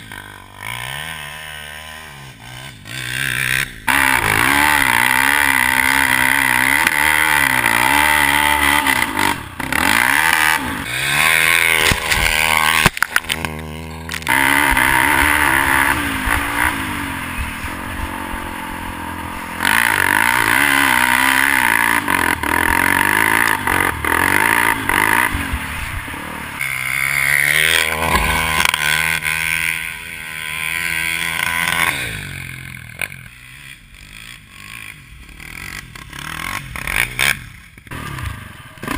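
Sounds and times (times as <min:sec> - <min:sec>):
quad engine revving: 0:00.0 - 0:38.9.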